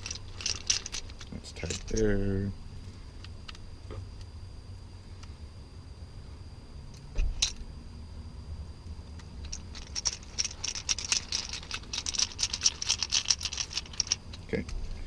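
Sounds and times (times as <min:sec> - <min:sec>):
plastic parts clicking and rattling: 0:00.0 - 0:02.2, 0:07.2 - 0:07.6, 0:09.2 - 0:14.9.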